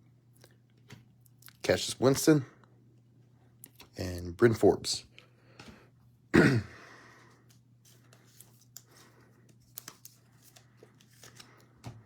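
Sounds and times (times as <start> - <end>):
cards being handled: 7.4 - 12.0.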